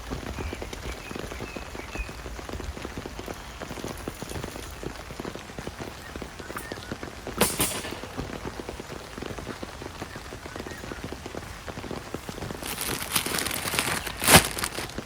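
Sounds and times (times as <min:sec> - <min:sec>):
heavy rain pattering: 0:00.0 - 0:15.0
sharp loud crack: 0:07.3 - 0:09.9.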